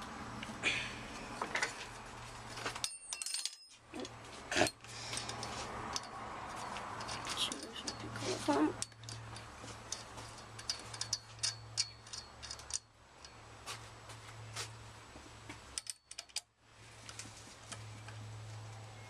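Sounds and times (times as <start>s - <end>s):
allen key clicking on bolts: 8.8s - 13.4s, 15.7s - 16.5s.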